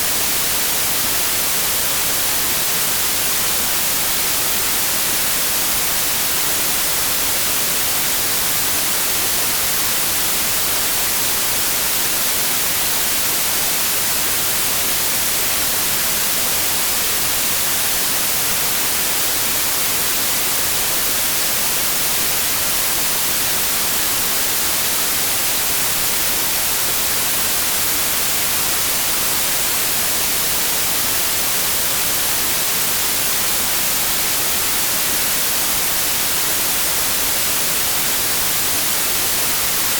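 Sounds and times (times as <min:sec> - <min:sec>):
steady white noise hiss: 0:00.0 - 0:39.9.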